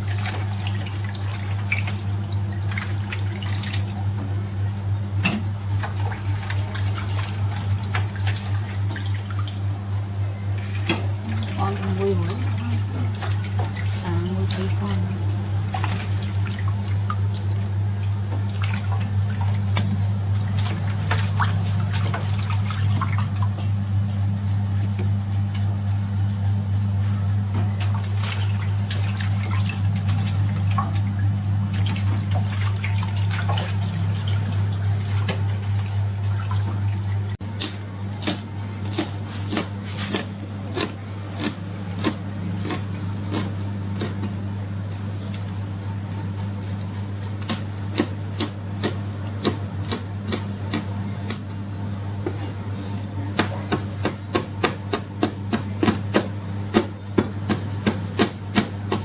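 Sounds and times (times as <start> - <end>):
low electrical hum: 0.0 - 59.0
knife chopping on cutting board: 53.4 - 59.0.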